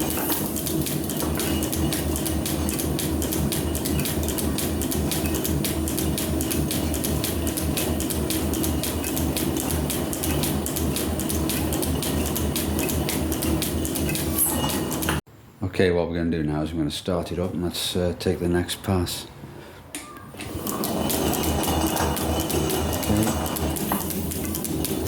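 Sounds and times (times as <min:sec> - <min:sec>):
metal planer humming and clicking: 0:00.0 - 0:15.2, 0:20.4 - 0:25.0.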